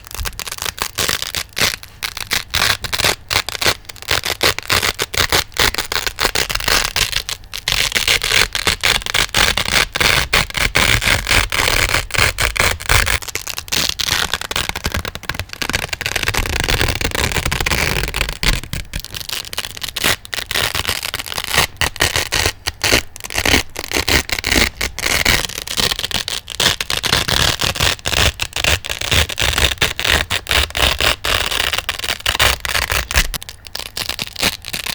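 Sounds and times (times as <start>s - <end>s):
velcro ripping: 0.0s - 34.9s.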